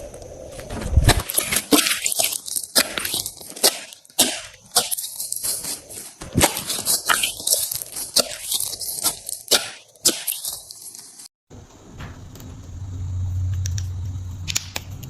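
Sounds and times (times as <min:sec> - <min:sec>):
slime squishing with crackle: 0:01.1 - 0:11.3.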